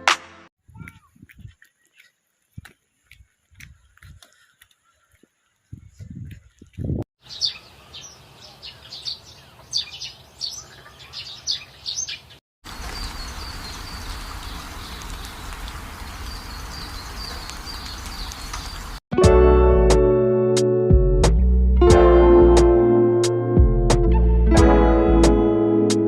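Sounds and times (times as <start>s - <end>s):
small birds chirping: 0.7s - 19.0s.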